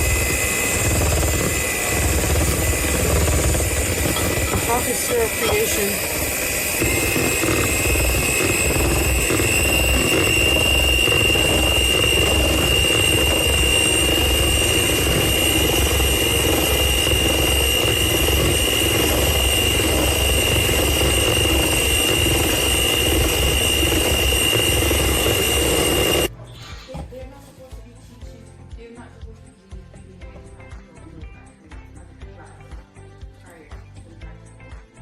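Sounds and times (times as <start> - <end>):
electric mixer motor whining: 0.0 - 26.3.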